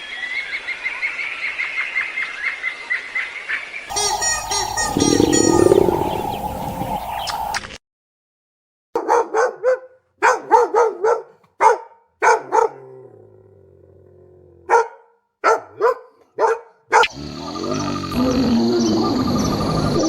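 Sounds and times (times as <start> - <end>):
dog barking: 9.0 - 13.0, 14.6 - 17.2.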